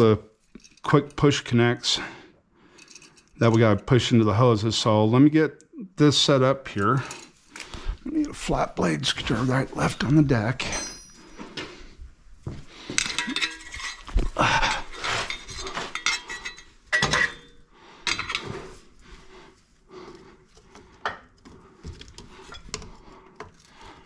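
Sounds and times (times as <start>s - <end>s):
metal tools clinking: 0.5s - 1.2s, 2.7s - 3.6s, 6.9s - 7.4s, 9.8s - 11.7s, 13.0s - 18.6s.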